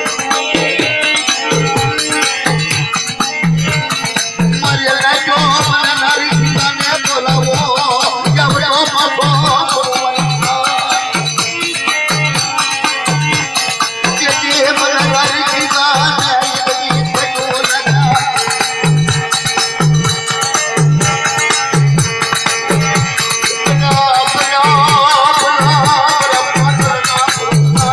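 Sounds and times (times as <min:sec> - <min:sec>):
music with low beat: 0:00.0 - 0:13.5
shaker-like percussion: 0:00.0 - 0:27.9
wavering melody: 0:00.0 - 0:27.9.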